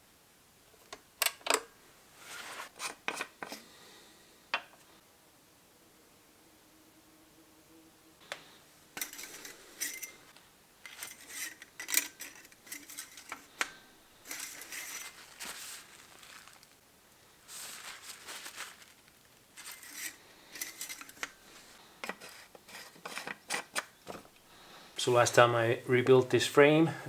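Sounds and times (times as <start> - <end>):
metal tools clinking on workbench: 9.0 - 15.7, 19.6 - 21.4.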